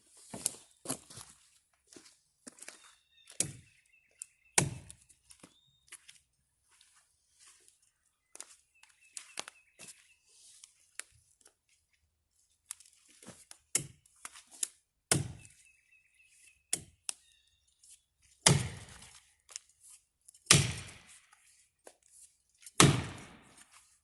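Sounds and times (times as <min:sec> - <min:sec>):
axe chopping into tree trunk: 0:04.6 - 0:05.0, 0:15.1 - 0:15.5, 0:18.4 - 0:19.1, 0:20.4 - 0:21.2, 0:22.8 - 0:23.7.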